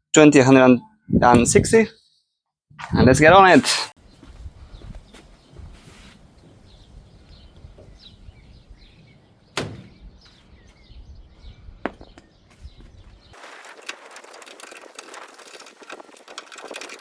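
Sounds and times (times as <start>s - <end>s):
sharp knock: 9.6s - 10.1s.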